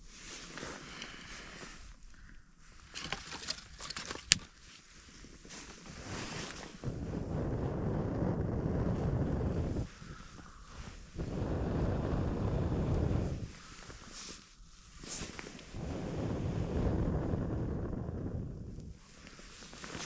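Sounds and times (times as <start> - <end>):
wind buffeting microphone: 6.8 - 13.7, 15.7 - 19.1.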